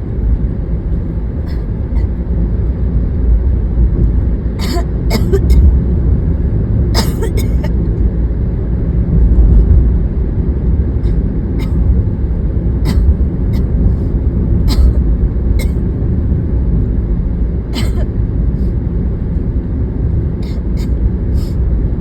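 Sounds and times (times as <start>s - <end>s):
car cabin road and engine rumble: 0.0s - 22.0s.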